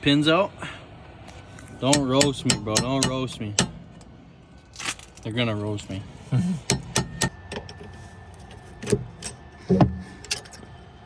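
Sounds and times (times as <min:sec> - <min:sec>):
metal parts clinking and knocking: 0:06.7 - 0:10.8.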